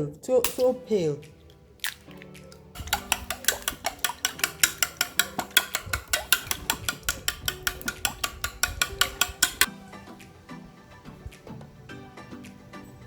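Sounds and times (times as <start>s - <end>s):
utensil clinking against bowl: 0.5s - 0.9s, 2.8s - 9.7s.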